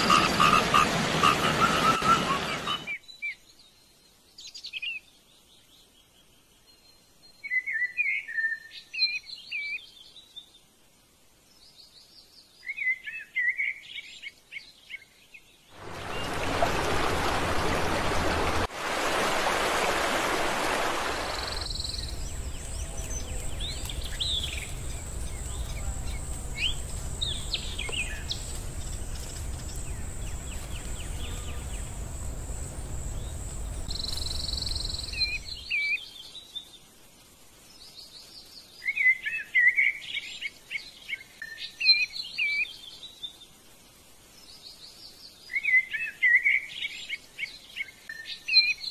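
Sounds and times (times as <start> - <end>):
songbirds warbling: 0.0 - 3.5, 12.6 - 18.7, 20.8 - 36.5
low rumble: 21.6 - 35.4.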